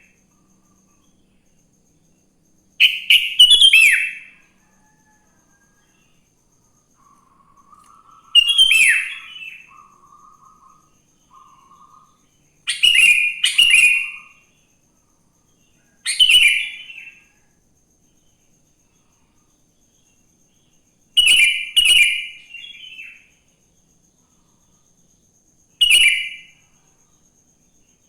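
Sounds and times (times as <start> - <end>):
soft bird warbling: 7.0 - 14.3.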